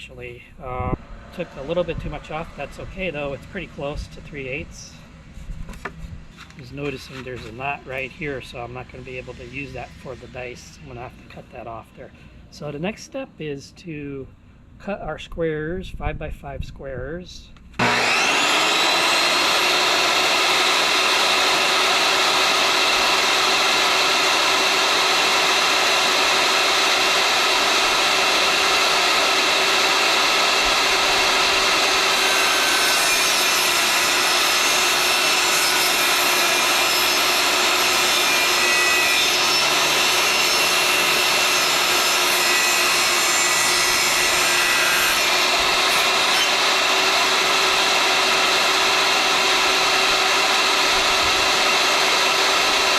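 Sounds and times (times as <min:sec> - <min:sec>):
saw cutting wood: 0:01.0 - 0:05.1, 0:05.7 - 0:11.4, 0:17.8 - 0:52.9
power saw motor running: 0:17.8 - 0:52.9.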